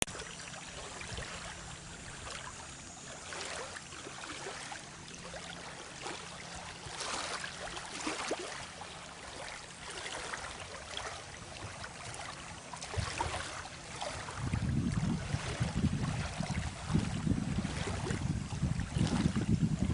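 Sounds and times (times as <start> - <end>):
waves lapping on shore: 0.0 - 19.9
wind rumble on microphone: 0.7 - 3.5, 9.2 - 19.9.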